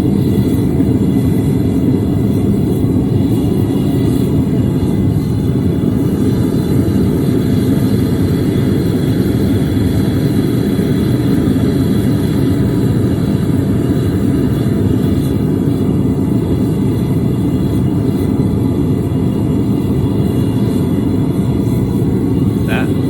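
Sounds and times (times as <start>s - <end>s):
forge burner roar: 0.0s - 23.0s.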